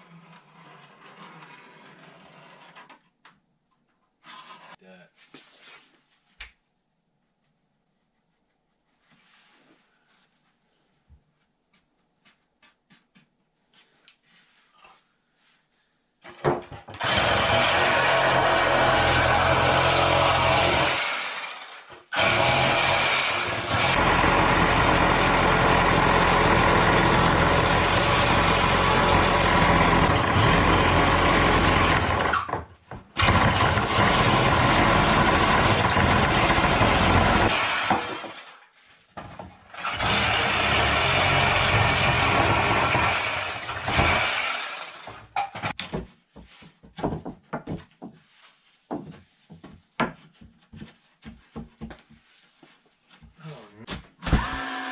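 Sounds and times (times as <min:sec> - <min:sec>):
power tool running: 0:17.0 - 0:32.5, 0:33.2 - 0:38.6, 0:39.8 - 0:45.2, 0:54.3 - 0:54.9.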